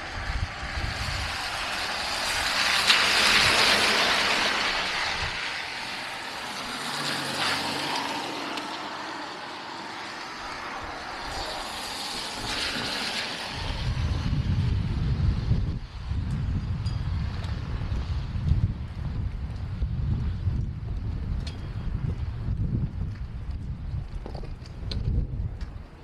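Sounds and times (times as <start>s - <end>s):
wind buffeting microphone: 0.0s - 9.3s, 10.3s - 26.0s
vehicle tyres hissing: 0.1s - 14.1s.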